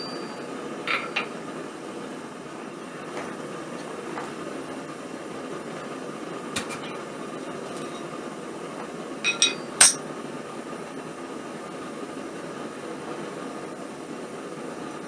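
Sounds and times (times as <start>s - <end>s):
gas forge roaring: 0.0s - 15.0s
steel tools clinking: 9.2s - 10.0s.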